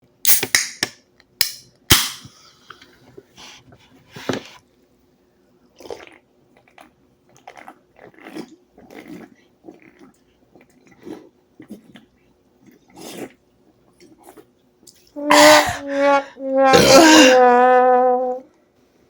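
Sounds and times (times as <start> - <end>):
gulping and throat sounds: 5.8 - 14.6.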